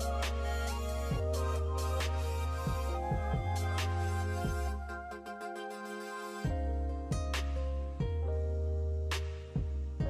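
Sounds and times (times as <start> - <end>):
beat with deep bass kicks: 0.0 - 5.0, 6.5 - 8.5, 9.1 - 10.0.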